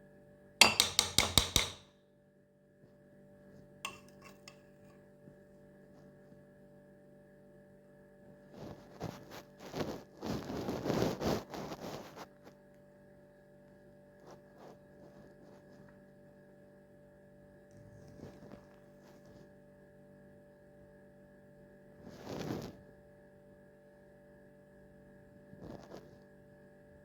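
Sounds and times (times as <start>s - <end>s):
utensil clinking against dish: 0.6s - 1.8s, 3.9s - 4.6s.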